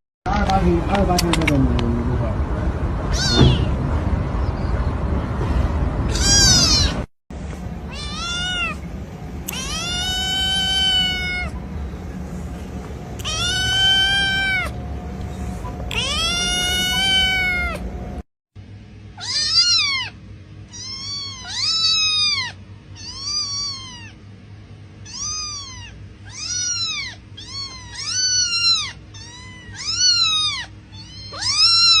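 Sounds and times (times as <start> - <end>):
kittens meowing: 3.1 - 3.8, 6.1 - 7.1, 7.9 - 8.8, 9.4 - 11.8, 13.2 - 14.8, 15.4 - 17.8, 19.2 - 24.2, 25.0 - 32.0.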